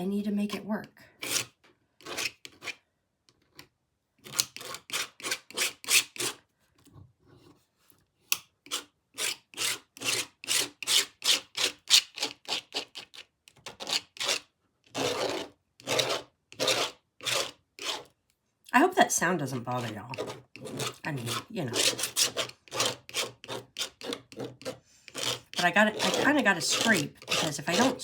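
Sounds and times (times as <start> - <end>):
paint scraping: 13.8 - 18.1, 19.1 - 28.0.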